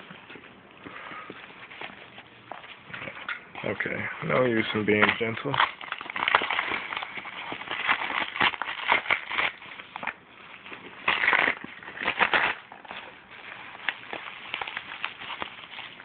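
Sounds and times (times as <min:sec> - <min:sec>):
cardboard ripping: 0:04.8 - 0:16.0.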